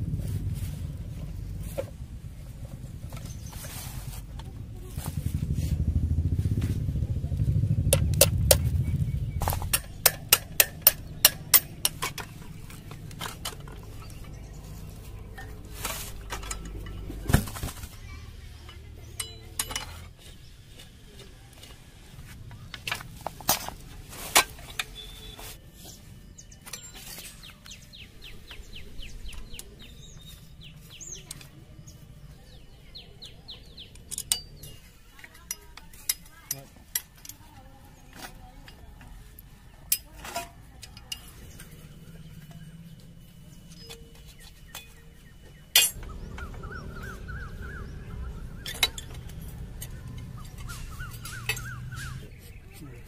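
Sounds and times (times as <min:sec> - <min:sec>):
small engine running: 0:00.0 - 0:22.4, 0:46.0 - 0:52.1
sharp metallic taps: 0:07.8 - 0:14.2
metal tools clinking: 0:09.5 - 0:17.8, 0:18.5 - 0:20.9, 0:33.8 - 0:47.1, 0:48.5 - 0:52.3.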